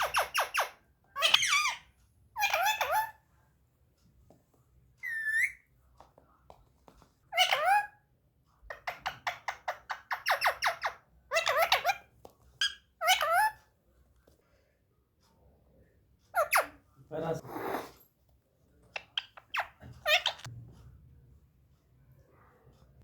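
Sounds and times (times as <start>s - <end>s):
parrot calls: 0.0s - 3.2s, 5.0s - 5.6s, 7.3s - 8.0s, 8.7s - 13.6s, 16.3s - 16.8s, 19.0s - 20.5s
parrot squawks: 0.0s - 3.2s, 5.0s - 5.6s, 7.3s - 8.0s, 8.7s - 13.6s, 16.3s - 16.8s, 19.0s - 20.5s
parrot whistling: 5.0s - 5.6s.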